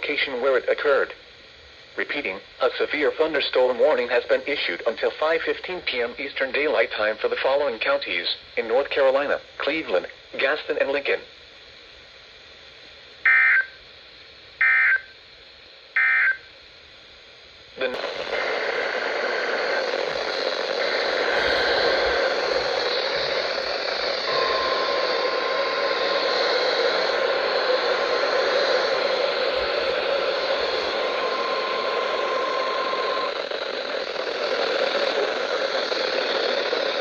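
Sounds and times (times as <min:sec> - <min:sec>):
loud rushing noise: 0:18.0 - 0:34.1
screechy digital data bursts: 0:18.0 - 0:36.7.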